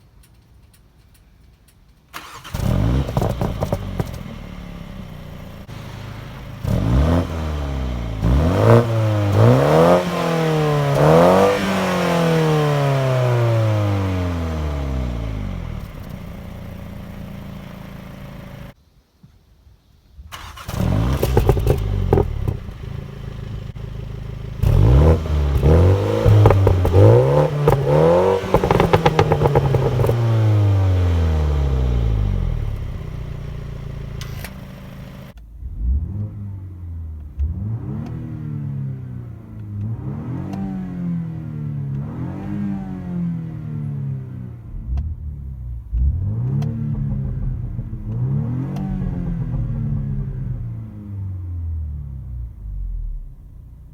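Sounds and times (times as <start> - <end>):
car engine starting and idling: 0.0 - 18.8, 20.2 - 53.9
car engine revving: 2.2 - 18.8, 20.3 - 53.9.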